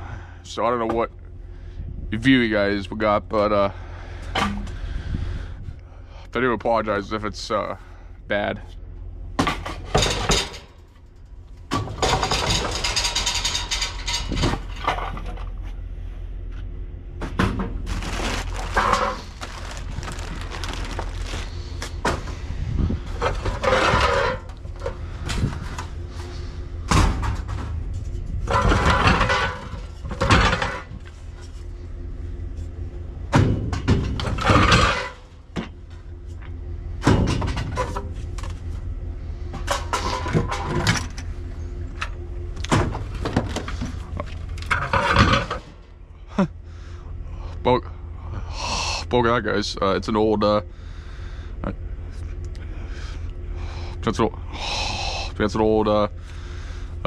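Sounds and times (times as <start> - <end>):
steady low hum: 0.0 - 57.0
household junk clattering: 9.4 - 10.8, 11.7 - 15.6, 17.3 - 22.4, 23.0 - 25.8, 28.4 - 31.1, 33.4 - 35.4.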